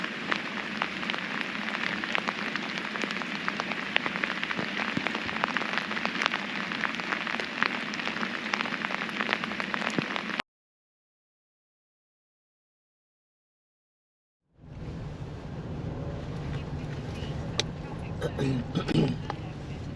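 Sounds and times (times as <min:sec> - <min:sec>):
rain on a hard surface: 0:00.0 - 0:10.4, 0:14.6 - 0:19.9.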